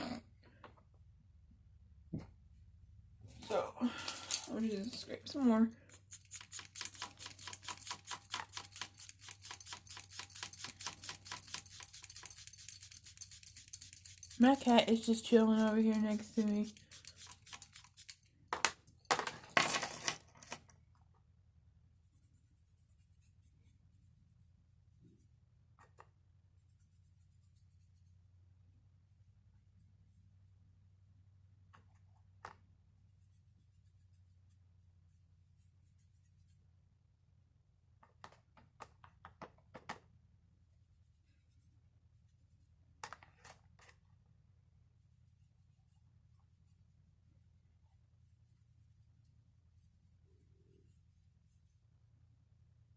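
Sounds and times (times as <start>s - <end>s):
key scraping chalk: 4.3s - 18.6s.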